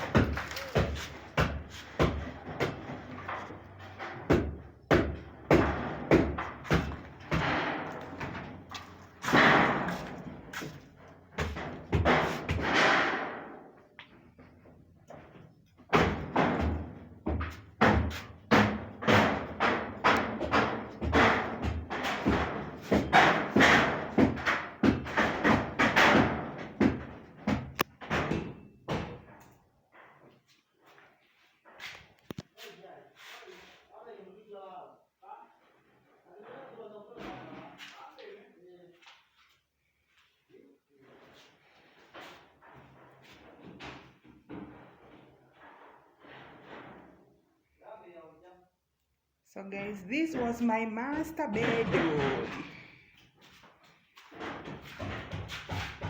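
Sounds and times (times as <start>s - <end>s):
heavy demolition blows: 0.0s - 10.5s
falling rubble: 0.0s - 13.6s
heavy thuds and crashes: 0.0s - 13.6s.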